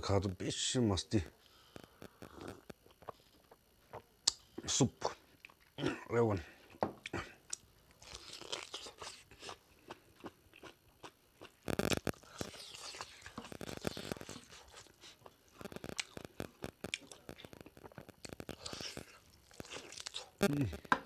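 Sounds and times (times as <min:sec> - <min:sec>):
person chewing food: 0:01.7 - 0:04.6, 0:05.3 - 0:05.8, 0:07.0 - 0:21.0
crunching: 0:07.5 - 0:21.0.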